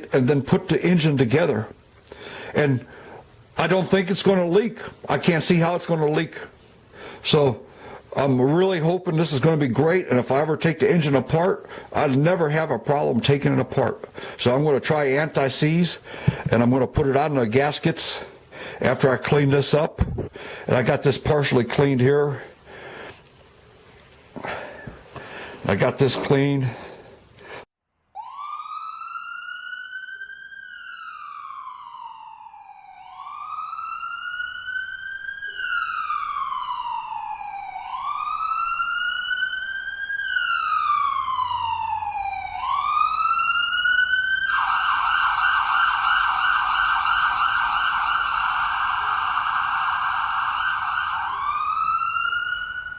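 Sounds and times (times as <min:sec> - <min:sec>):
emergency siren wailing and yelping: 0:28.1 - 0:52.9.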